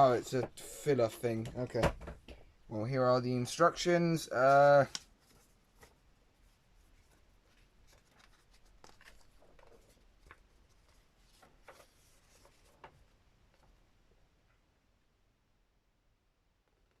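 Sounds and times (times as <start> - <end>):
paper and packaging rustling: 7.0 - 13.6.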